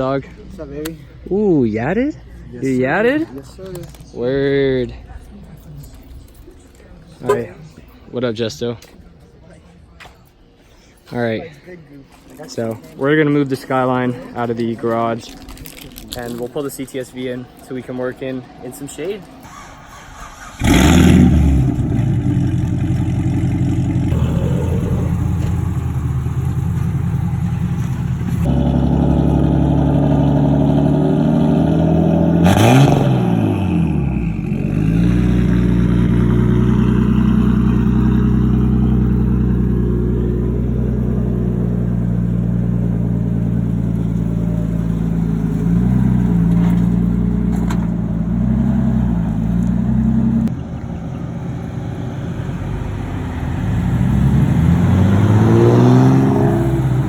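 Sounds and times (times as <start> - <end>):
car engine starting and idling: 19.4 - 57.0.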